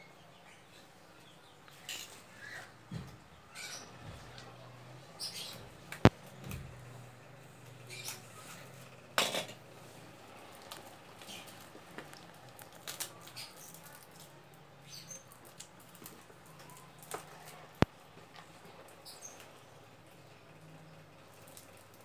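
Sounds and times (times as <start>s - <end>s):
toy packaging rustling and clicking: 10.5s - 14.4s.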